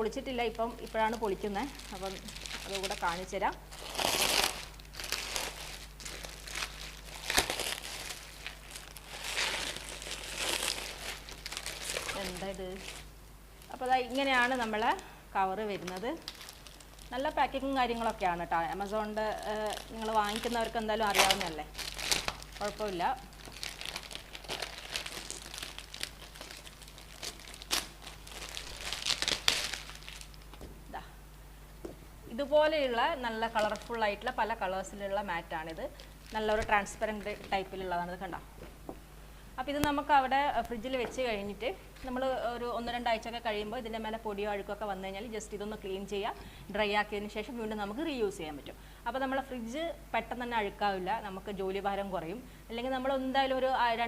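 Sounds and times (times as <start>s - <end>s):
packaging crinkling as torn open: 1.1s - 13.0s, 15.8s - 17.2s, 18.8s - 30.6s.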